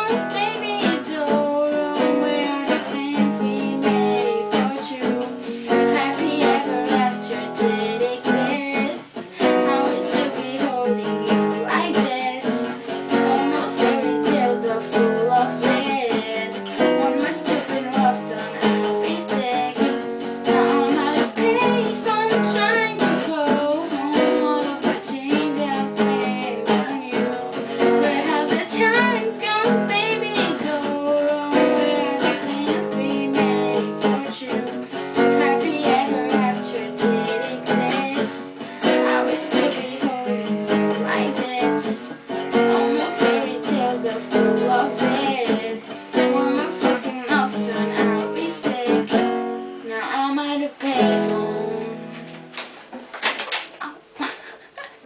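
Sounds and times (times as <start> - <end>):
woman singing pop melody: 0.0 - 52.2
strummed acoustic guitar: 0.0 - 54.7.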